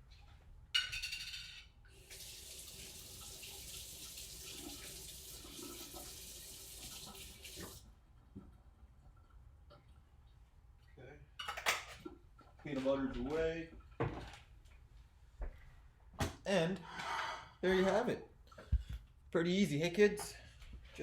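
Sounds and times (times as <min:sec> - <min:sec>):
kitchen faucet running: 0:01.9 - 0:07.8.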